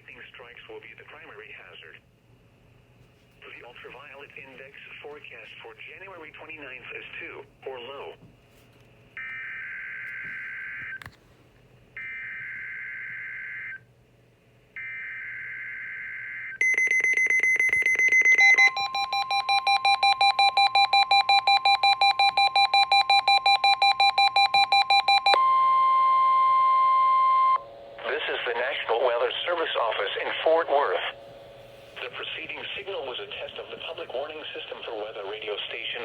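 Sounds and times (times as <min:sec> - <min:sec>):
electronic alert beeps: 0:16.6 - 0:26.0.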